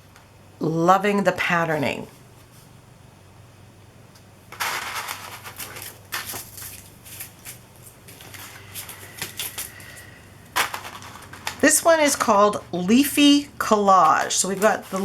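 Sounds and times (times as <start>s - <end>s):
plastic sheets crackling and rustling: 4.5s - 15.0s.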